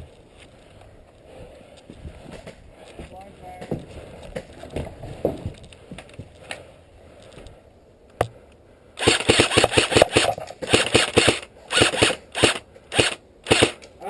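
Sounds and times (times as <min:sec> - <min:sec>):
airsoft gun firing bursts: 0:09.0 - 0:13.8.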